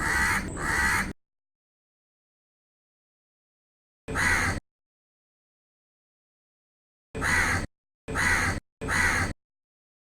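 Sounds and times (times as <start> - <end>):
crow cawing: 0.0 - 1.1, 4.2 - 4.6, 7.2 - 9.4.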